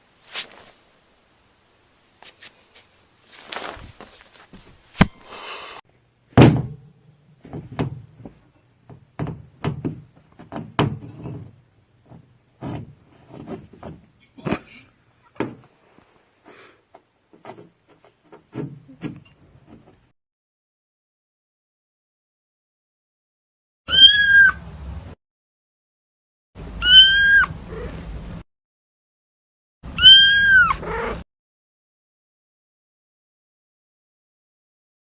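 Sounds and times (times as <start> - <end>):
knocks and thumps: 6.4 - 14.1, 15.4 - 15.7, 16.9 - 20.1.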